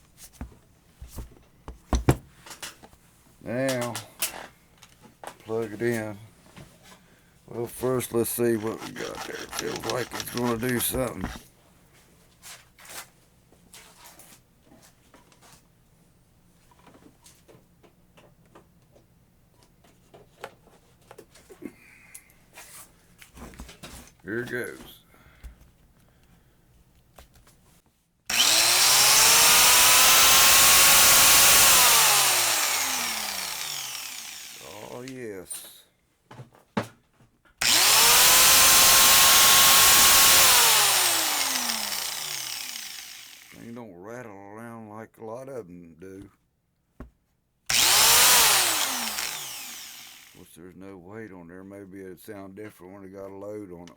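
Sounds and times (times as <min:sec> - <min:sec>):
angle grinder whine: 0:08.0 - 0:11.4, 0:28.3 - 0:35.2, 0:37.6 - 0:43.7, 0:47.7 - 0:50.4
clicks and taps from handling tool: 0:08.6 - 0:11.4.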